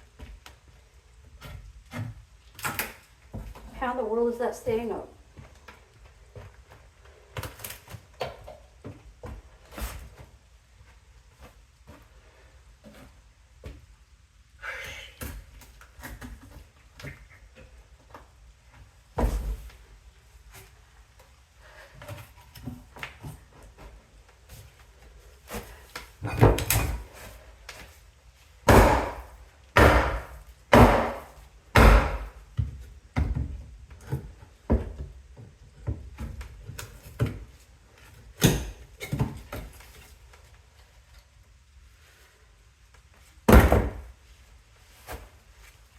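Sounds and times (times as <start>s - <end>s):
heavy blows on wood: 28.6s - 32.5s
knocks of tools and boards: 28.6s - 37.4s, 43.5s - 44.1s.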